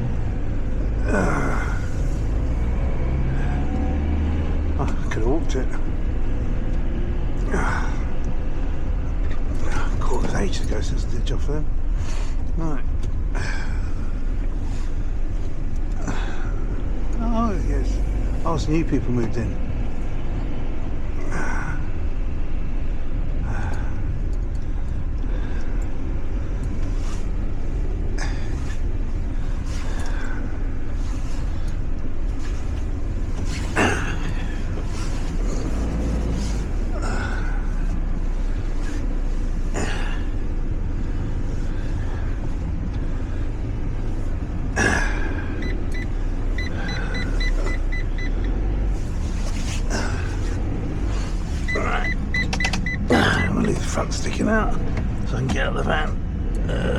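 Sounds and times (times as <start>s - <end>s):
van engine and road rumble: 0.0s - 56.9s
knocks and clicks: 52.3s - 53.0s.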